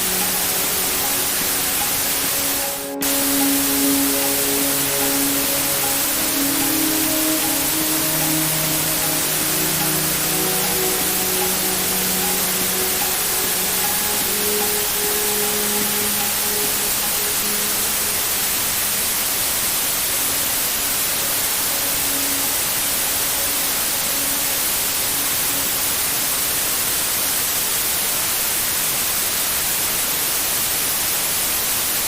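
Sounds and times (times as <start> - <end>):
soft held notes: 0.0 - 25.6
white noise hiss: 0.0 - 32.0.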